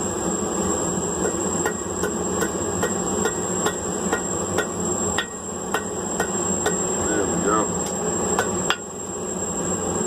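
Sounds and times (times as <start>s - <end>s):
hammer striking steel on anvil: 1.2s - 6.9s, 8.4s - 8.9s.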